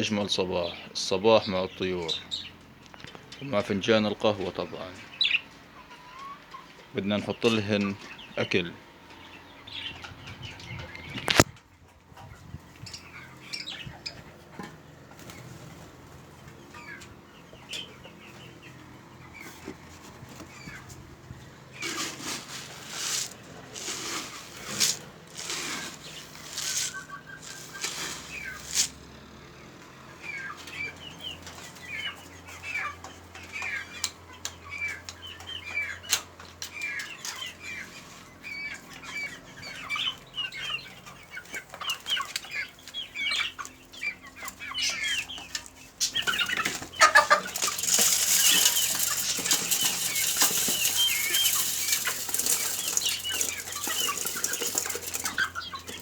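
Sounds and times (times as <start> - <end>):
birds chirping: 0.0 - 56.0
birds rustling: 12.6 - 29.1, 30.3 - 56.0.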